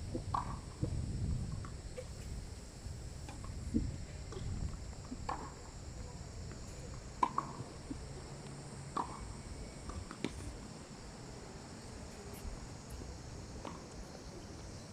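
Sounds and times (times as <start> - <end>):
wind rumble on microphone: 0.0 - 8.2
tennis balls struck with rackets: 7.2 - 7.7, 9.0 - 9.2.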